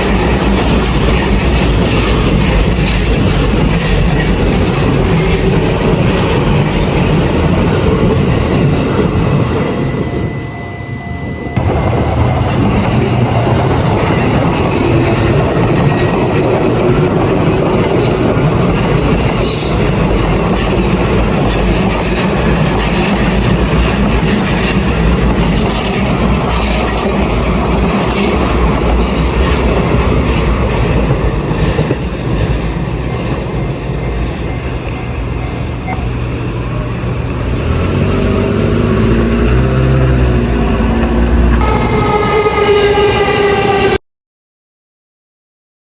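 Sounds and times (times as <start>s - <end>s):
train wheels clattering on rails: 0.0s - 9.8s, 11.6s - 41.7s
train wheels squealing: 8.2s - 11.6s, 21.2s - 36.9s.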